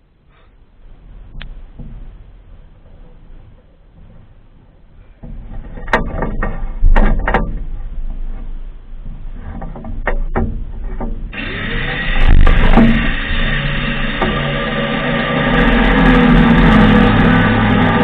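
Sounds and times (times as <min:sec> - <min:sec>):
sharp knocks: 0:05.2 - 0:07.8, 0:09.0 - 0:11.4, 0:12.2 - 0:17.2.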